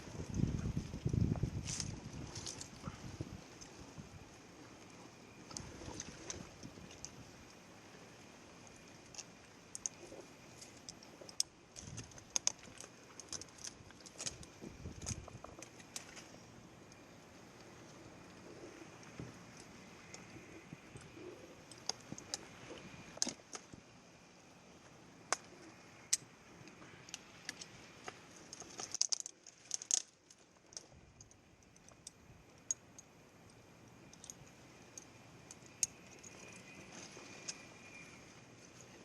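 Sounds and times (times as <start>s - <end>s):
faint steady hiss: 0.0s - 39.0s.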